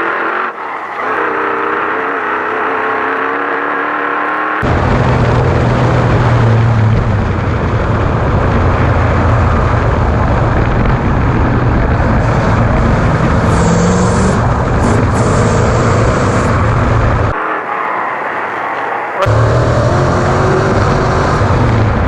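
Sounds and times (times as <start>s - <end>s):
truck engine hum: 0.0s - 22.0s
loud rushing noise: 4.6s - 22.0s.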